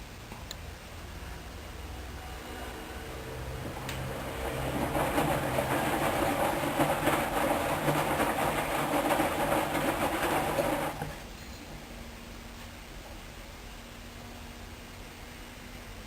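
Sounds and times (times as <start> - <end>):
washing machine motor humming: 1.0 - 11.3
laundry and water sloshing in drum: 2.8 - 11.3.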